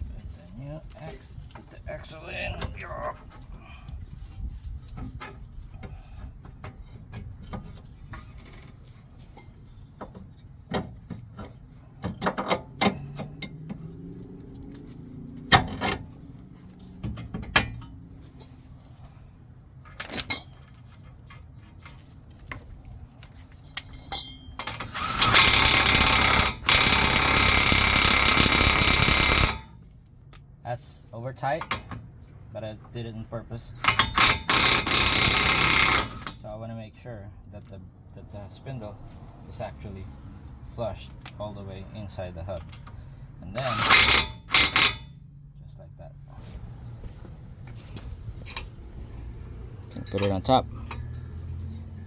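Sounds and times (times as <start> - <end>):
metal clanks and knocks: 4.9 - 13.9, 16.8 - 18.5, 19.8 - 23.1, 23.7 - 29.8, 33.7 - 36.4, 43.6 - 45.3
impact wrench hammering: 24.1 - 29.7, 33.8 - 36.4, 43.6 - 45.2.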